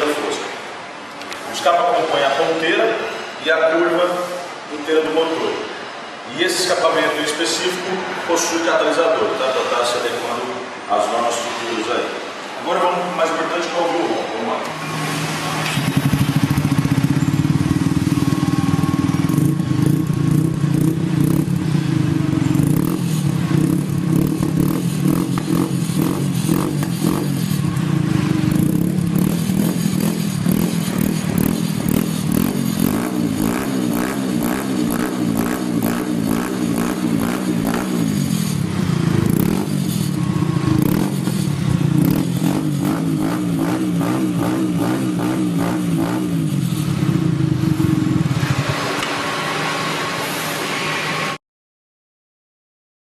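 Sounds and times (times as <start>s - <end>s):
motorcycle engine idling: 15.7s - 32.9s, 34.4s - 43.0s.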